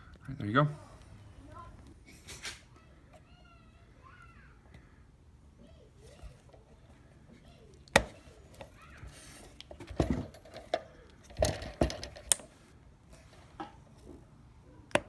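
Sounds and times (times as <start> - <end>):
metal parts clicking and knocking: 9.4 - 12.5.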